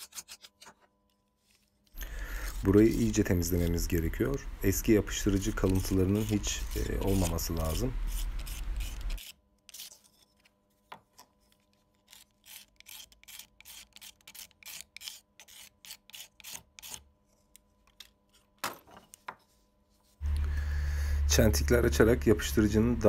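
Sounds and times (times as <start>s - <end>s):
hand tool scraping glue: 0.0s - 0.8s, 2.0s - 3.8s, 5.1s - 10.3s, 12.1s - 17.0s.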